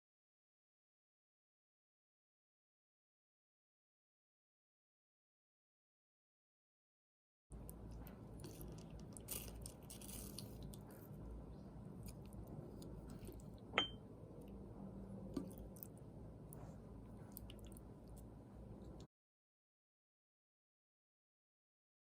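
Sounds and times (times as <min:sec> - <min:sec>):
soft chewing: 0:07.5 - 0:13.7, 0:14.3 - 0:19.1
utensil clinking against dish: 0:13.8 - 0:14.0.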